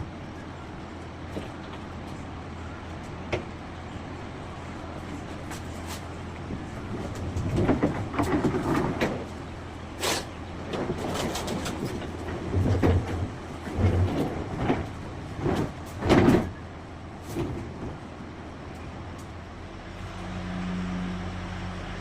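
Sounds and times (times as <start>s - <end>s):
irregular knocks and clatter: 6.4s - 9.4s, 10.6s - 16.6s.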